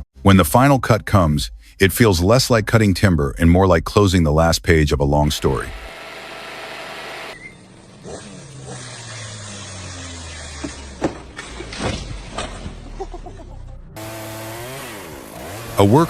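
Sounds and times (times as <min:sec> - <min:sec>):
higher engine note rising and falling: 0:05.2 - 0:11.0, 0:13.7 - 0:16.0
low engine running: 0:05.2 - 0:11.4.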